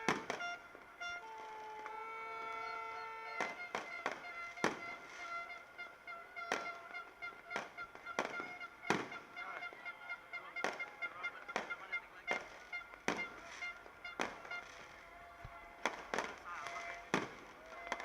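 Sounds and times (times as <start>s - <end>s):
fireworks bursting: 0.0s - 18.0s
horn blasts: 0.0s - 18.0s.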